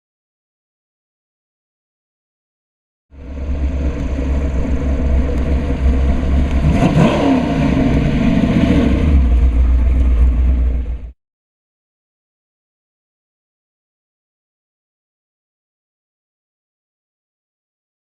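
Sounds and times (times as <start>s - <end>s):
vee eight engine rumbling: 3.1s - 11.2s.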